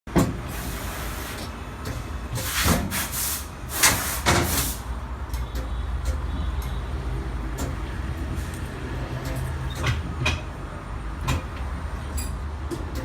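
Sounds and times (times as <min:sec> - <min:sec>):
air hiss bursts: 0:00.5 - 0:01.5, 0:02.4 - 0:04.9.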